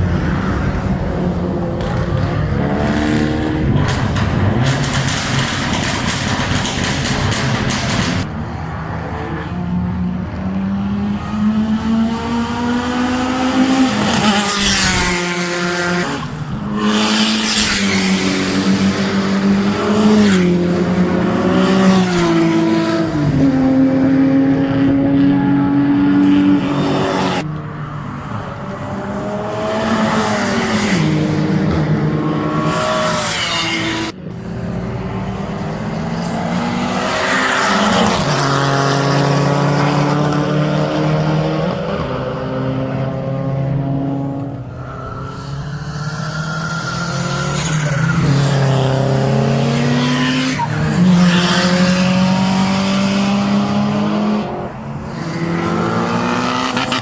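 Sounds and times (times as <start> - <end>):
racing car engine revving: 45.0 - 57.0.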